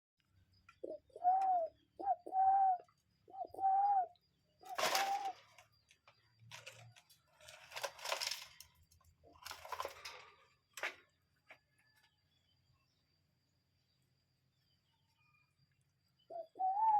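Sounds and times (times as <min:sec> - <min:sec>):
cuckoo calling: 0:00.7 - 0:05.6, 0:16.3 - 0:16.9.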